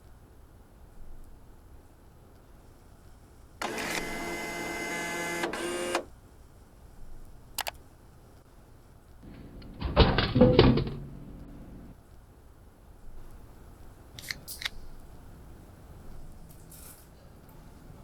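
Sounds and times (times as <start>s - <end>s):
vending machine motor whirring: 3.6s - 6.1s, 9.2s - 11.9s
vending machine click: 9.2s - 11.9s
soda can clattering into tray: 9.3s - 11.9s.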